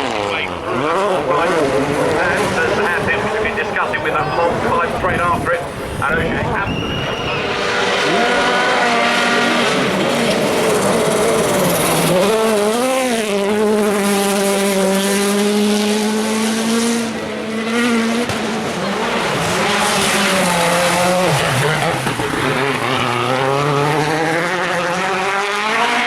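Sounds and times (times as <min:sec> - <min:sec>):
rally car engine at full throttle: 0:00.0 - 0:26.0.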